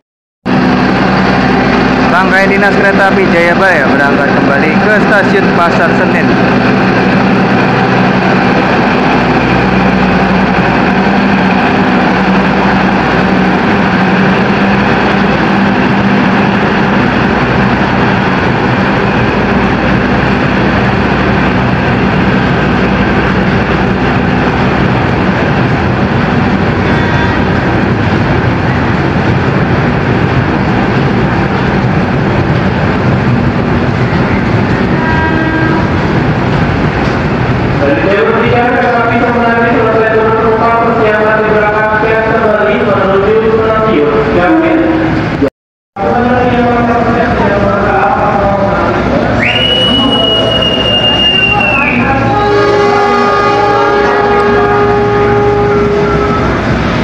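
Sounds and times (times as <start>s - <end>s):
locomotive engine running under load: 0.5s - 38.7s.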